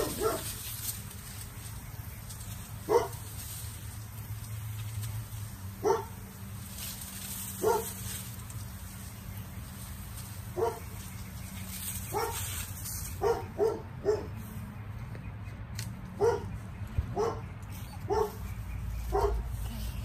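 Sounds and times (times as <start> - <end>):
dog barking: 0.0 - 0.5, 2.9 - 3.2, 5.8 - 6.2, 7.6 - 7.9, 10.6 - 10.8, 12.1 - 12.4, 13.2 - 14.4, 16.2 - 16.5, 17.2 - 18.4, 19.1 - 19.5.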